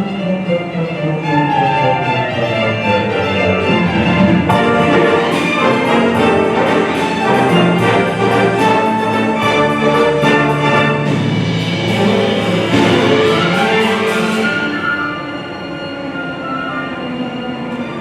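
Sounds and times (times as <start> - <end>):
strings: 0.0 - 18.0
timpani: 0.0 - 18.0
brass: 3.4 - 17.1.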